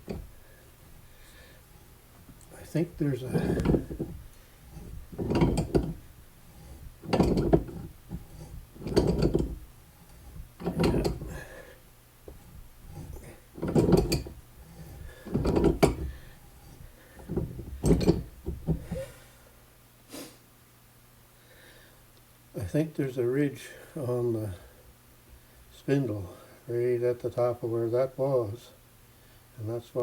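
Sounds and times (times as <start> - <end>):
metal spindle scraping in housing: 0.0 - 11.6, 12.3 - 19.1.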